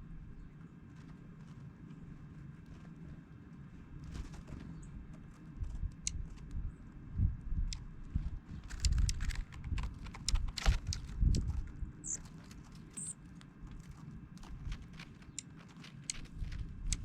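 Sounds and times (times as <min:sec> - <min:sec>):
sharp ticking and tapping: 0:08.7 - 0:12.2, 0:12.9 - 0:13.2, 0:14.4 - 0:17.0
high bird chip notes: 0:12.9 - 0:13.2.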